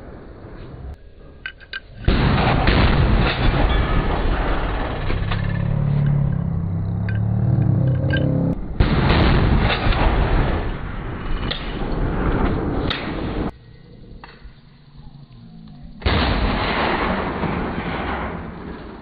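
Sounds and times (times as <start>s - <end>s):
gunfire: 2.0s - 5.8s, 8.6s - 13.5s, 16.0s - 19.0s.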